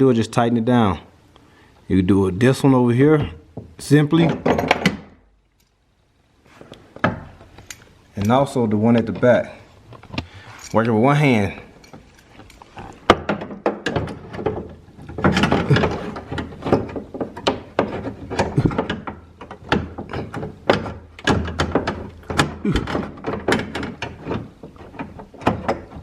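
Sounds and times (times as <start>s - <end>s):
clicks knocks and scrapes: 11.8s - 26.0s.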